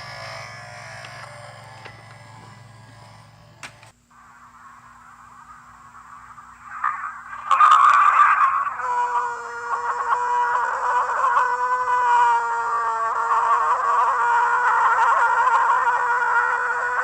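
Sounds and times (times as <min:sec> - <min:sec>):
slowed laugh wavering wail: 0:07.2 - 0:17.0.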